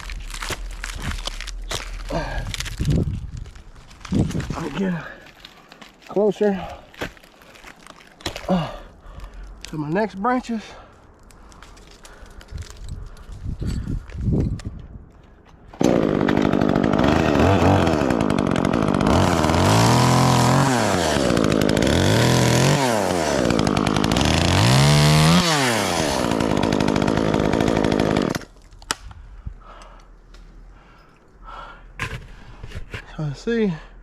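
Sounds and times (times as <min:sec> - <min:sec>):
chainsaw engine revving: 0:15.8 - 0:28.5.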